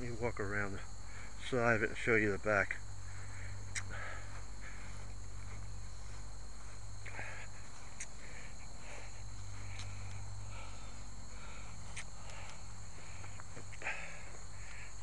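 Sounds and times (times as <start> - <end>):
constant low hum: 0.0 - 15.0
insects chirring: 0.0 - 15.0
soft footsteps and rustles: 3.7 - 14.8.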